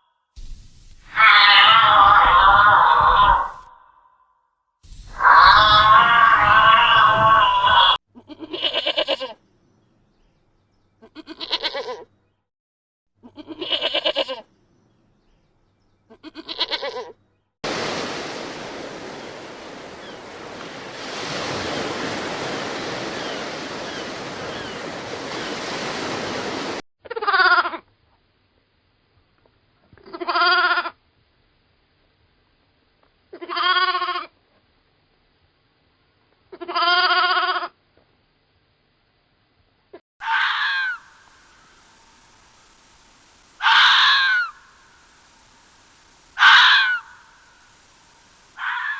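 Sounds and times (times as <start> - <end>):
farm animal bleating: 5.2 - 9.4, 11.0 - 12.1, 13.2 - 14.5, 16.1 - 17.2, 30.0 - 31.0, 33.3 - 34.3, 36.5 - 37.7.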